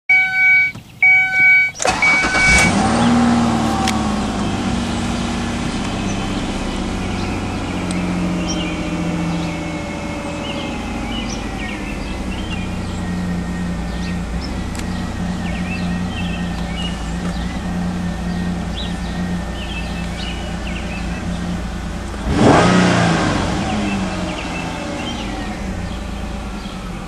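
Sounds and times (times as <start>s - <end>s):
dashboard warning chime: 0.1s - 2.8s
car engine starting and rough idling: 1.0s - 27.0s.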